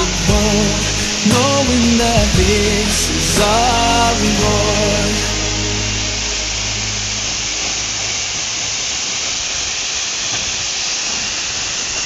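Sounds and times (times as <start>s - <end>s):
background music: 0.0s - 8.6s
waterfall rushing: 0.0s - 12.0s.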